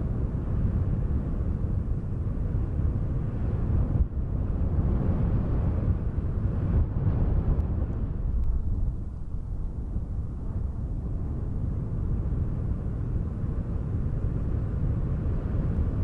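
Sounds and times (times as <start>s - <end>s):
wind blowing in gusts: 0.0s - 16.0s.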